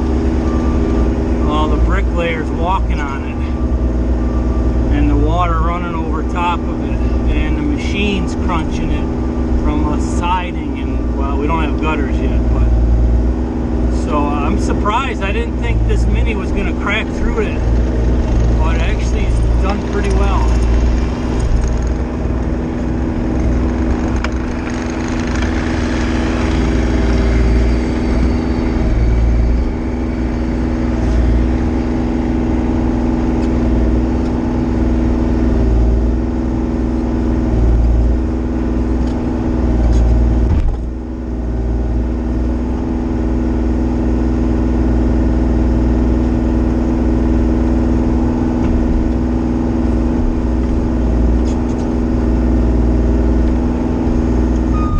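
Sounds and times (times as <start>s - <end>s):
excavator diesel engine digging: 0.0s - 34.4s.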